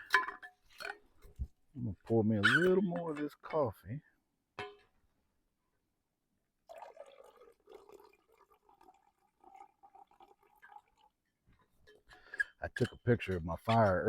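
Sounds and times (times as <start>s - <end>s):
coffee being poured: 6.6s - 11.3s.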